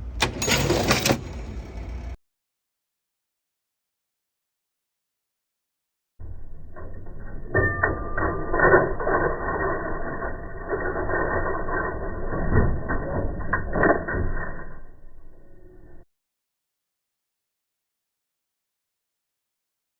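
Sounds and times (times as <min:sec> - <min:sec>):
cash register gears clattering: 0:00.0 - 0:02.2, 0:06.9 - 0:15.1.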